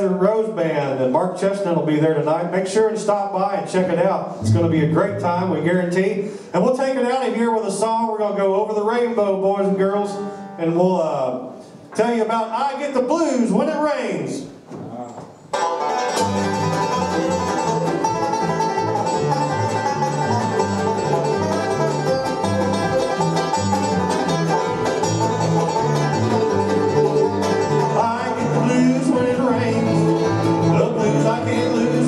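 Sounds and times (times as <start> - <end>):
guitar: 4.0 - 6.1, 15.5 - 32.0
fast banjo picking: 4.3 - 6.0, 15.5 - 32.0
bass line: 4.4 - 6.0, 16.2 - 32.0.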